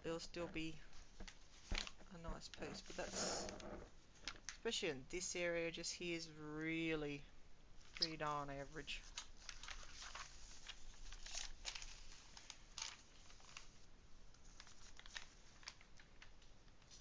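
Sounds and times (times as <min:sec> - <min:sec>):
plastic film crinkling: 0:00.6 - 0:03.2, 0:08.9 - 0:17.0.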